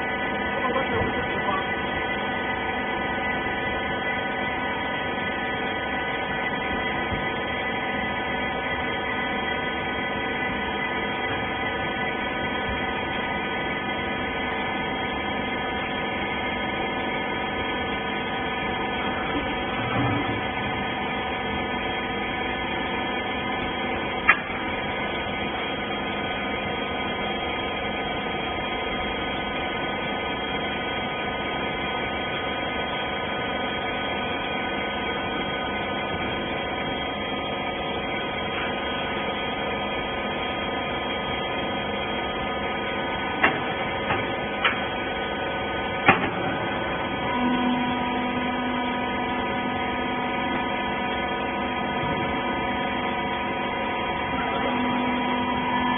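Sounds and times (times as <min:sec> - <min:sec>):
hydraulic baler humming: 0:00.0 - 0:55.9.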